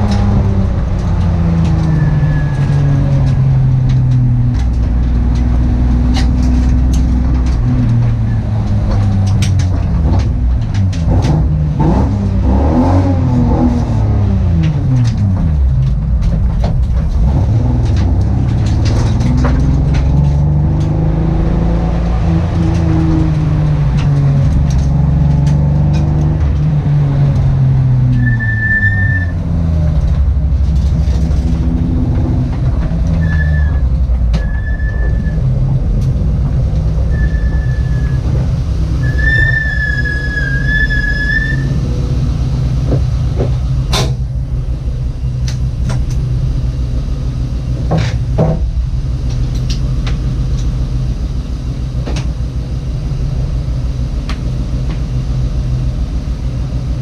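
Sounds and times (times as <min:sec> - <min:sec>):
car engine accelerating: 0:00.0 - 0:57.0
high whistling tones: 0:01.8 - 0:02.9, 0:28.2 - 0:29.4, 0:33.2 - 0:35.4, 0:37.1 - 0:38.3, 0:39.0 - 0:41.9.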